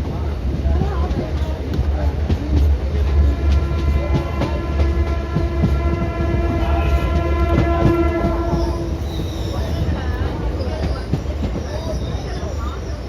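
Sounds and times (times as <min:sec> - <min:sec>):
train rumbling: 0:00.0 - 0:13.0
train horn: 0:03.0 - 0:09.4.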